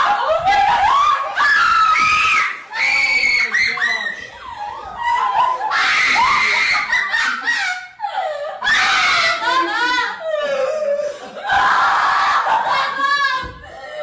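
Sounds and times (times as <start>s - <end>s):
loud screams: 0.0s - 4.2s, 5.1s - 8.0s, 8.6s - 10.1s, 11.4s - 13.6s
laughter: 4.2s - 14.0s.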